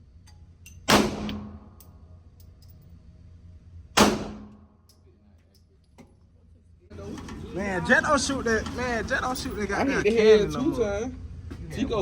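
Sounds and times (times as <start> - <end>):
gunshots with ringing echo: 0.9 - 1.8, 4.0 - 4.7.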